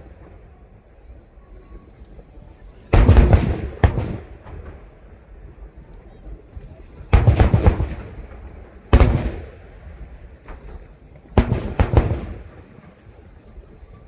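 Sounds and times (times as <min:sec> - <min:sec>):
fireworks bangs echoing: 0:02.9 - 0:05.6, 0:07.1 - 0:12.9.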